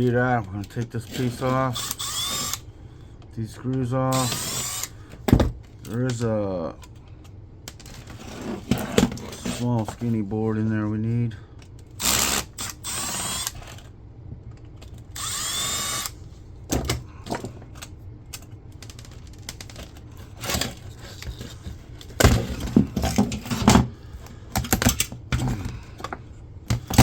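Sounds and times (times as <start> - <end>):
power drill whining: 1.7 - 2.6, 4.1 - 5.0, 12.0 - 13.8, 15.1 - 16.2.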